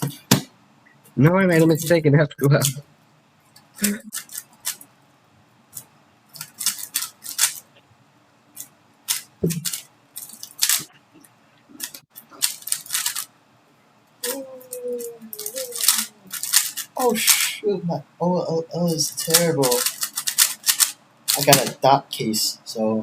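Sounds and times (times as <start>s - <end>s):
puzzle cube plastic clicking: 3.8s - 4.8s, 5.8s - 7.6s, 11.8s - 13.3s, 15.4s - 16.9s, 19.2s - 21.8s.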